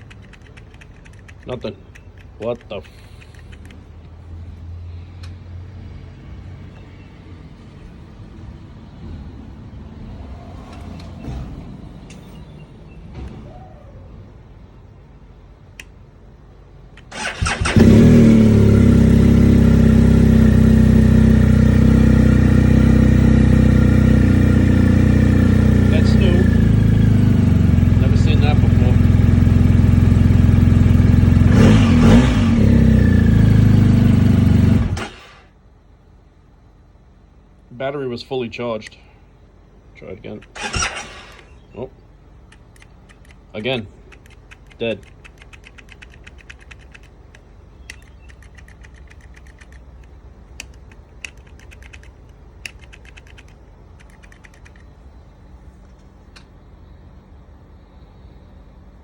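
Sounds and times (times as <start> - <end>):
starter relay rapid clicking: 0.0 - 3.8, 44.1 - 54.9
motorcycle engine revving: 17.1 - 35.5, 40.5 - 41.5.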